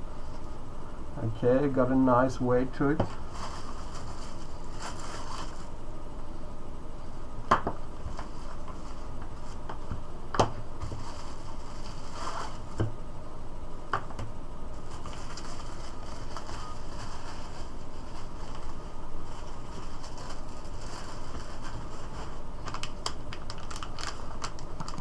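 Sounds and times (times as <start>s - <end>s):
soft rustling: 3.0s - 5.7s, 14.8s - 25.0s.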